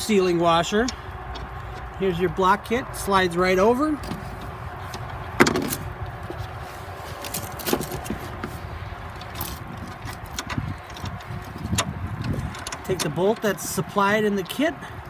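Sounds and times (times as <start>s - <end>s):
steady low rumble: 0.0s - 15.0s
metal fittings clicking and clinking: 7.2s - 14.7s.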